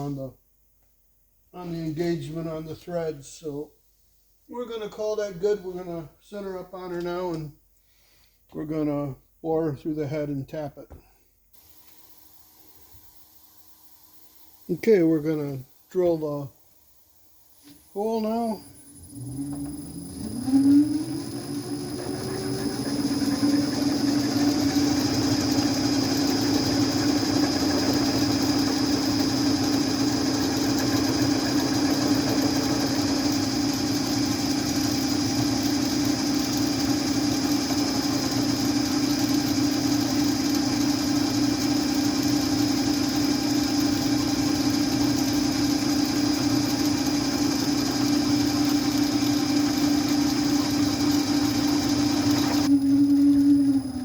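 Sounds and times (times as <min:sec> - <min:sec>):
machine spindle drilling with whine: 0:17.5 - 0:54.0.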